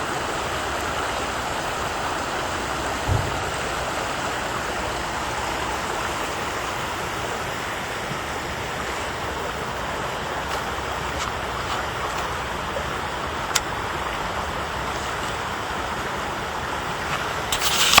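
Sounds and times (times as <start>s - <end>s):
stream rushing over rocks: 0.0s - 18.0s
sharp click: 17.6s - 18.0s.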